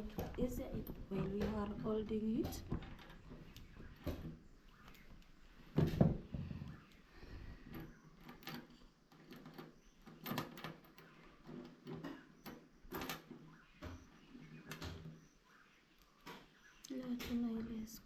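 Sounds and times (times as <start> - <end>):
tools and metal parts clicking: 7.5 - 14.1.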